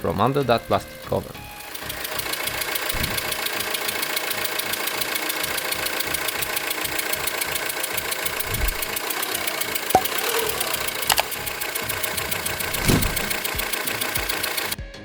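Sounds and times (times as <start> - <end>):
diesel engine idling with ticking: 0.0 - 14.8
exhaust gas hissing: 0.0 - 14.8.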